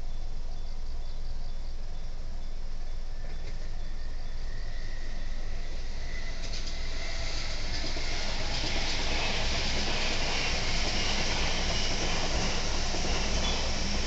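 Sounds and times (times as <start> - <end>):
train rushing and rumbling: 3.4 - 14.0.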